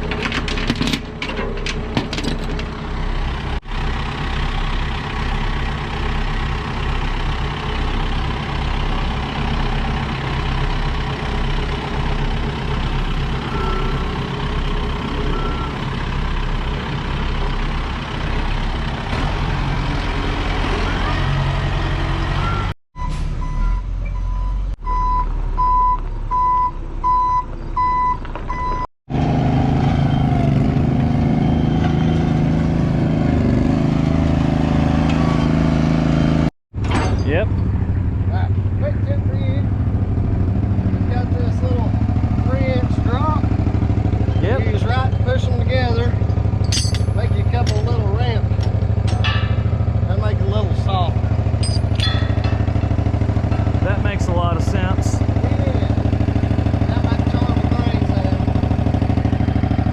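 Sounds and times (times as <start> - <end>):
heavy equipment engine running: 0.0 - 59.9
backup alarm beeping: 22.4 - 28.9.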